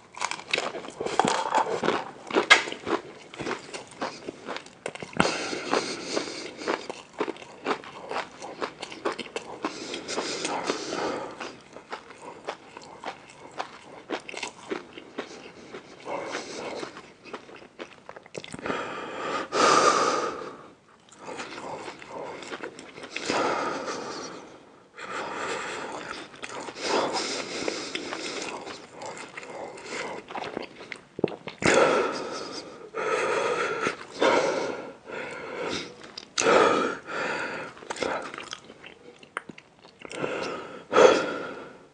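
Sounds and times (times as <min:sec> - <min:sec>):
biting and chewing: 0:00.0 - 0:18.7, 0:21.0 - 0:23.4, 0:25.4 - 0:32.6, 0:37.4 - 0:40.6.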